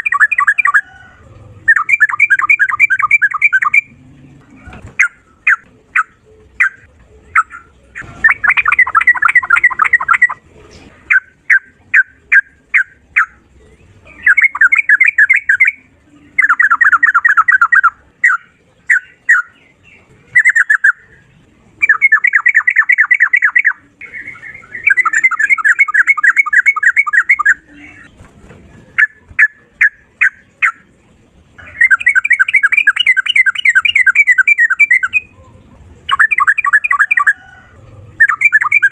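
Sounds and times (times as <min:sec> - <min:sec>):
sharp bird chirps: 0:00.0 - 0:00.8, 0:01.7 - 0:03.9, 0:36.1 - 0:37.4
bird singing trilled runs: 0:01.7 - 0:03.9.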